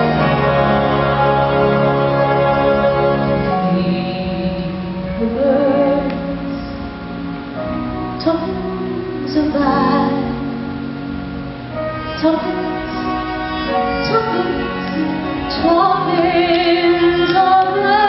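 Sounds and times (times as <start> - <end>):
sustained accompaniment: 0.0 - 18.0
woman singing: 3.5 - 6.8, 8.2 - 10.6, 12.1 - 13.3, 13.9 - 18.0.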